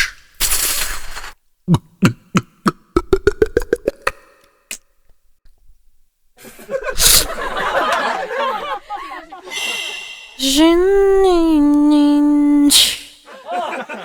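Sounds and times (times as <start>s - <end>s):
beatboxed hissing burst: 6.9s - 7.5s, 9.5s - 10.7s, 12.7s - 13.3s.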